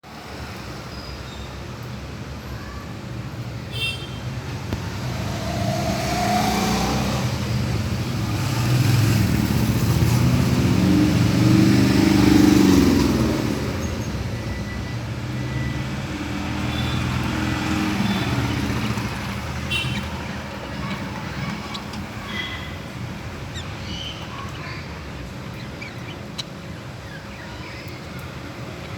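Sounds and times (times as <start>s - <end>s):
vehicle engine passing: 4.5s - 28.9s.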